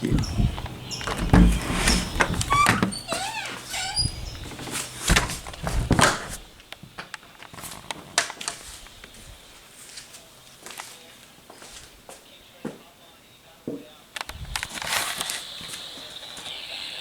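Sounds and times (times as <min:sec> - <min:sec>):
thuds and knocks: 0:00.0 - 0:06.5.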